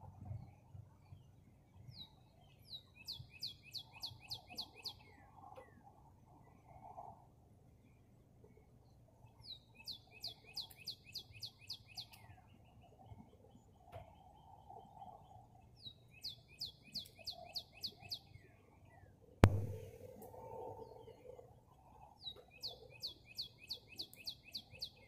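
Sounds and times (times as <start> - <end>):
songbird whistled song: 0.4 - 5.8, 7.9 - 20.0, 21.9 - 25.0
sharp loud knock: 19.4 - 20.0.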